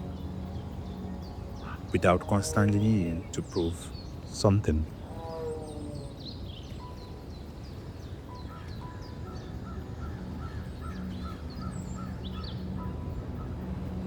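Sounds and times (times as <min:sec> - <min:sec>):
low music drone: 0:00.0 - 0:05.2, 0:08.6 - 0:14.0
birds chirping and calling: 0:00.0 - 0:07.1.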